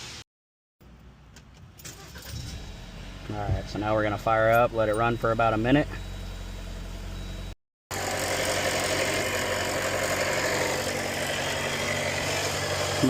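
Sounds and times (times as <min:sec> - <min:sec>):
car engine idling: 0:00.8 - 0:07.5.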